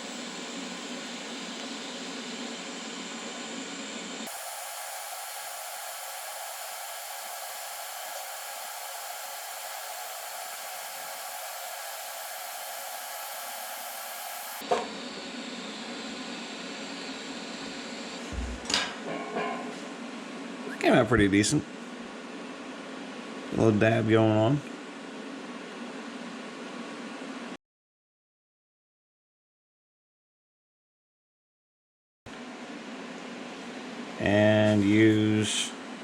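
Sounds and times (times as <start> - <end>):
welding arc hiss: 0.0 - 14.6.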